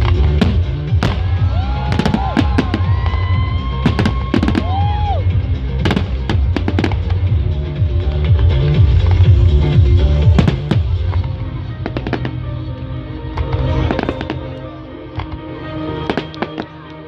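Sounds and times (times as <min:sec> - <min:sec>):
music with heavy bass beat: 0:00.0 - 0:12.4
fireworks bangs and crackles: 0:00.0 - 0:12.6, 0:13.3 - 0:14.6, 0:16.0 - 0:16.8.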